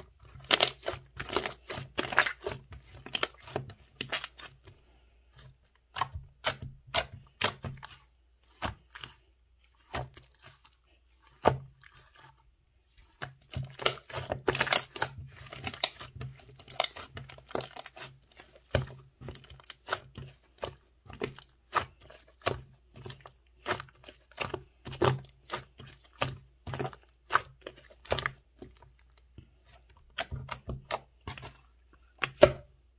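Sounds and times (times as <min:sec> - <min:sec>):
slime popping and crackling: 0:00.4 - 0:02.5
slime tearing: 0:00.4 - 0:04.5.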